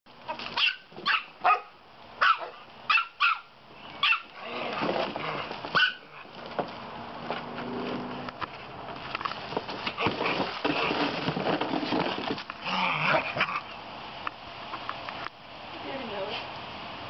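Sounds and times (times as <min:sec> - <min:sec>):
dogs barking: 0:00.6 - 0:04.4, 0:05.7 - 0:06.3
dog growling: 0:04.4 - 0:05.6, 0:12.6 - 0:13.8.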